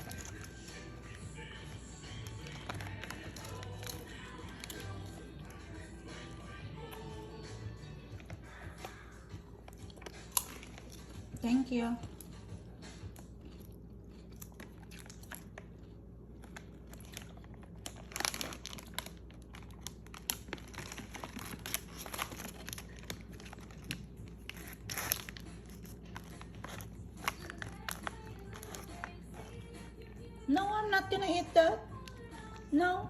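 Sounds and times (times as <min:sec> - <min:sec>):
chip bag crinkling: 0:00.0 - 0:05.8, 0:09.6 - 0:11.4, 0:13.2 - 0:29.9
chips crunching: 0:00.0 - 0:11.4, 0:12.1 - 0:29.9.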